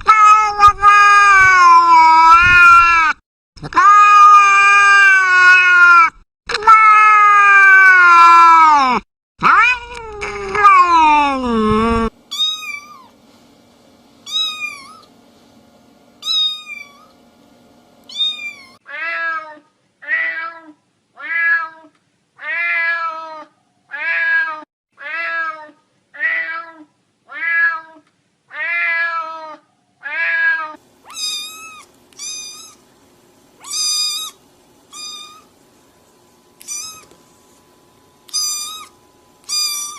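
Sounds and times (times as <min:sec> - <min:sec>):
cat meowing: 0:00.0 - 0:03.2, 0:09.4 - 0:11.6, 0:12.3 - 0:13.1, 0:14.3 - 0:15.1, 0:16.2 - 0:17.1, 0:18.1 - 0:32.8, 0:33.6 - 0:35.5, 0:36.6 - 0:37.1, 0:38.3 - 0:39.9
high-pitched cat mews: 0:00.0 - 0:13.1, 0:14.3 - 0:15.1, 0:18.1 - 0:32.8, 0:33.6 - 0:35.5, 0:36.6 - 0:37.1, 0:38.3 - 0:39.9.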